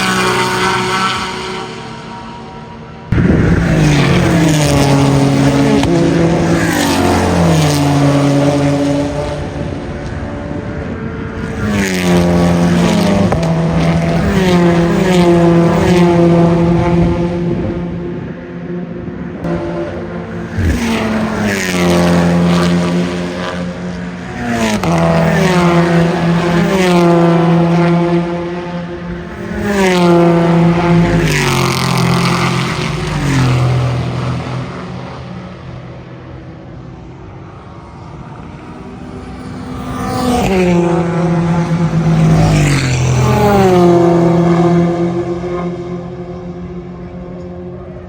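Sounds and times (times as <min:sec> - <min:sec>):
race cars passing: 0:00.0 - 0:48.0.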